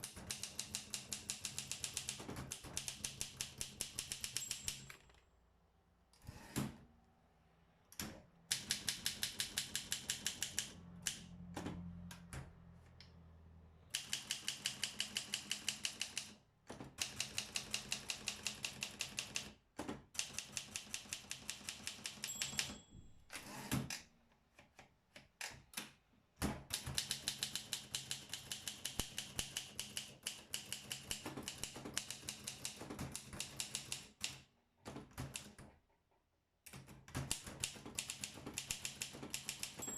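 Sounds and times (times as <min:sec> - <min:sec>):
manual typewriter typing: 0:00.0 - 0:05.2, 0:08.5 - 0:11.3, 0:13.9 - 0:19.6, 0:20.2 - 0:22.8, 0:26.7 - 0:35.7, 0:36.7 - 0:39.9.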